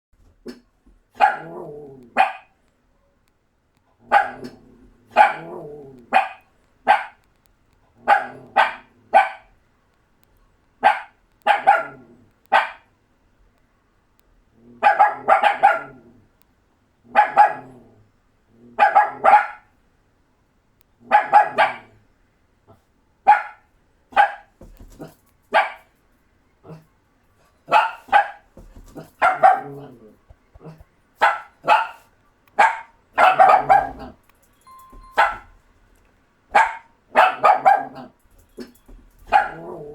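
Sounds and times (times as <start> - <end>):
puppies barking: 27.7 - 29.9, 30.6 - 34.2, 34.9 - 35.6, 36.5 - 39.9.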